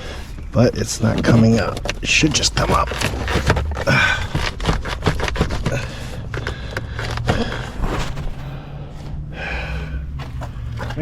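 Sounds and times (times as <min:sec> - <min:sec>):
plastic trim clicking and knocking: 0:01.0 - 0:07.7.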